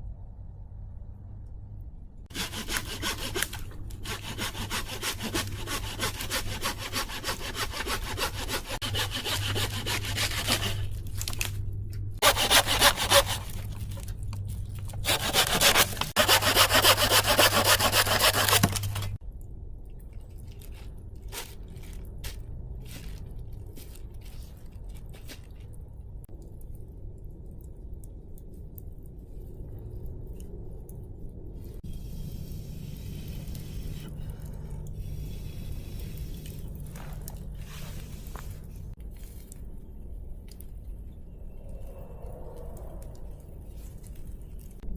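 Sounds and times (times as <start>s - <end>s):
hand saw cutting wood: 2.3s - 10.9s, 12.2s - 13.6s, 15.0s - 19.1s.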